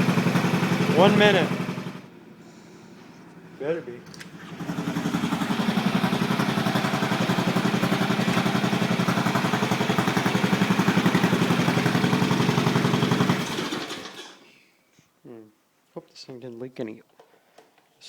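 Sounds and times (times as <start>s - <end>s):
lawn tractor engine starting: 0.0s - 2.4s, 3.4s - 14.5s.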